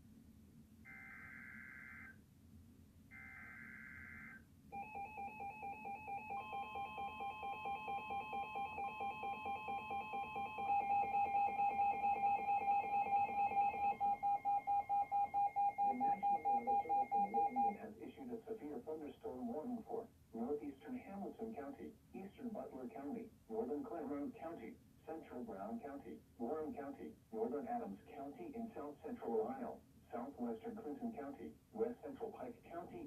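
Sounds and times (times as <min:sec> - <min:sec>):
rapidly pulsing alarm beep: 0:04.8 - 0:17.8.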